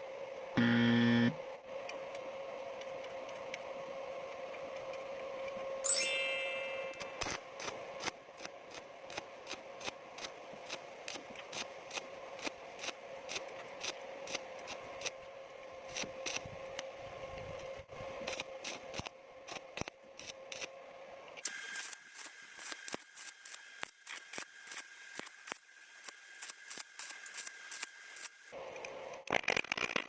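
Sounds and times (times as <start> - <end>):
welding arc crackling and popping: 7.2 - 15.2, 15.9 - 16.5, 17.6 - 20.7, 21.4 - 28.5, 29.2 - 30.0.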